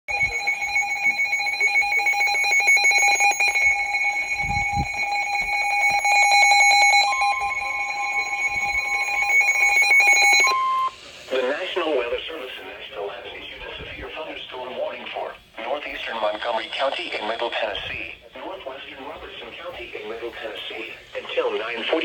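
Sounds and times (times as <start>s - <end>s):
steady single tone: 0.1s - 11.0s
pulsing electronic alarm: 0.1s - 11.6s.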